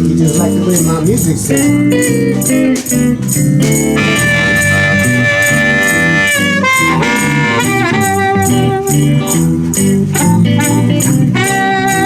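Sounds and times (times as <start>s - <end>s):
blues band playing: 1.8s - 12.0s
harmonica bending notes: 4.0s - 8.6s.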